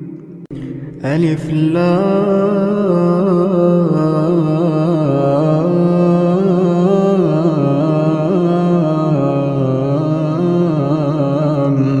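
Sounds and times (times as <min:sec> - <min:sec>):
person reciting melodically: 0:00.5 - 0:12.0.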